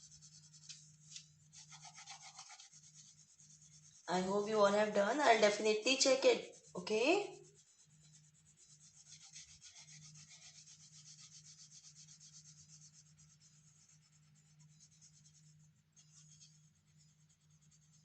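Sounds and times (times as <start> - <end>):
pencil scratching on paper: 0.0 - 18.0.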